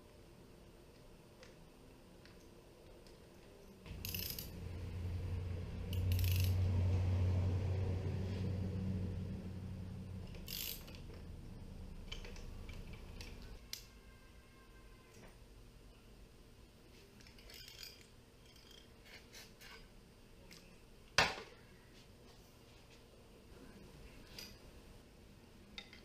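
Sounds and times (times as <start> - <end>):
low rumble: 3.9 - 13.4.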